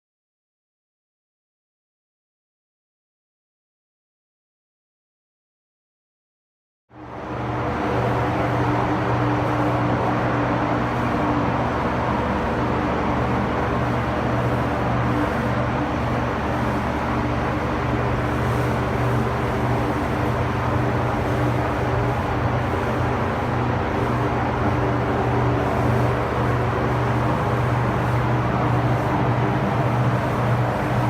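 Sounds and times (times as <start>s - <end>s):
steady mechanical hum with hiss: 6.9s - 31.0s.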